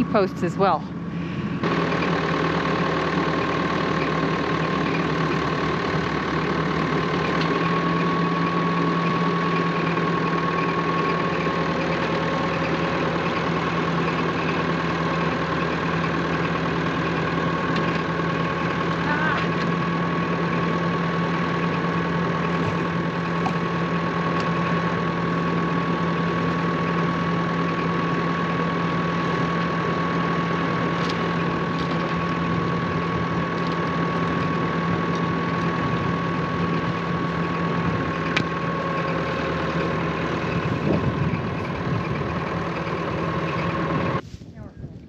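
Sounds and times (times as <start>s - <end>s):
engine idling: 0.0s - 45.0s.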